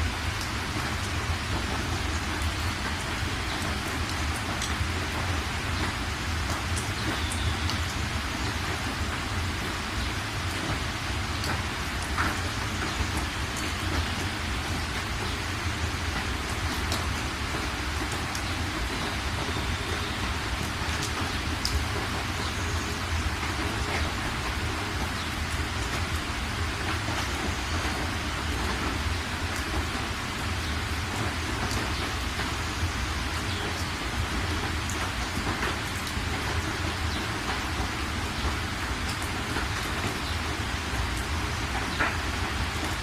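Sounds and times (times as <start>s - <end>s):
heavy rain falling: 0.0s - 43.0s.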